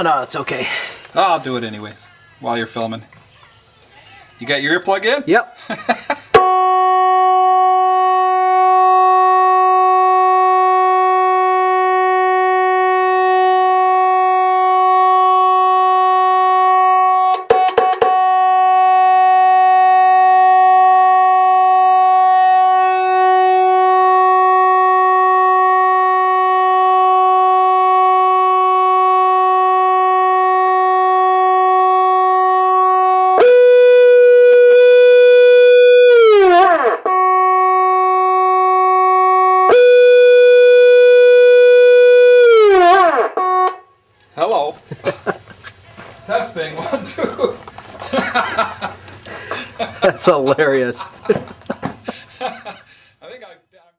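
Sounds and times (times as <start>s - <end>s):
fog horn tone: 6.4s - 44.0s.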